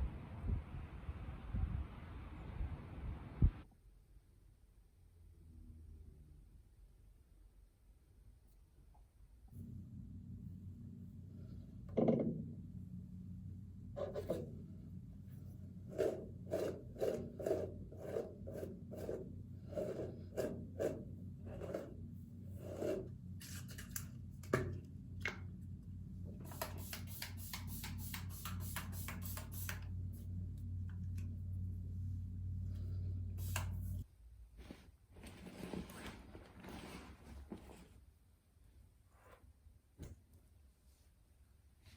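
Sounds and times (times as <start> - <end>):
low steady hum: 0.0 - 3.7, 8.3 - 38.7
scratchy strokes: 15.4 - 23.7.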